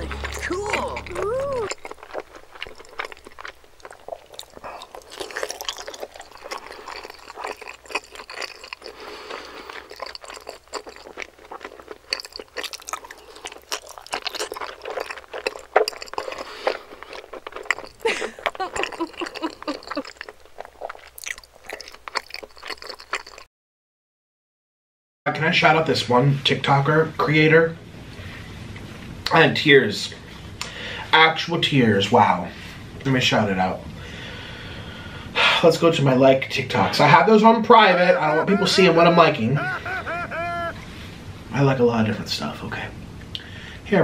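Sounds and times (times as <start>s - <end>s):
person humming: 0.0s - 1.8s, 39.6s - 40.9s
wet chewing clicks and smacks: 0.0s - 23.5s.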